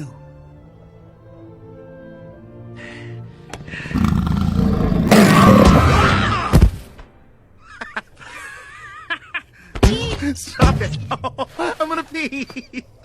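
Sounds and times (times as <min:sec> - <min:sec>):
big cat roar: 0:03.9 - 0:06.5.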